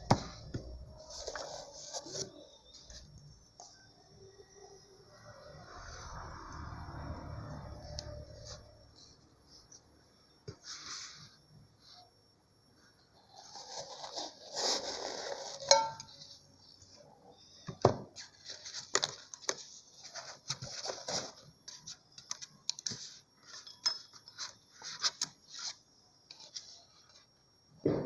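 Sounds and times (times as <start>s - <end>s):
plastic rustling and crinkling: 18.2s - 23.6s.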